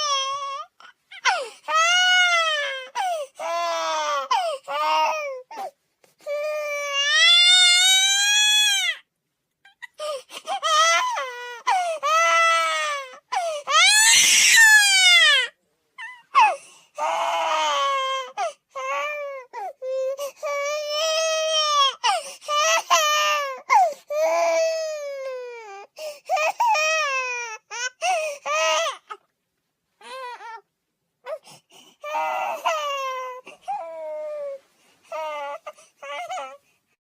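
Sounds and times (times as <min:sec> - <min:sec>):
baby crying: 0:00.0 - 0:09.1, 0:09.7 - 0:29.2, 0:30.0 - 0:36.6.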